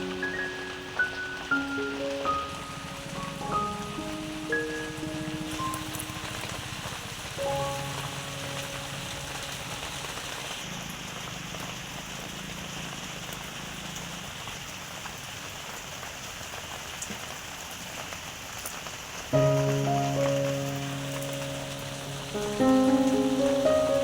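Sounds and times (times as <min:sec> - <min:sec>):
oil crackling: 0:00.0 - 0:12.8, 0:19.3 - 0:24.0.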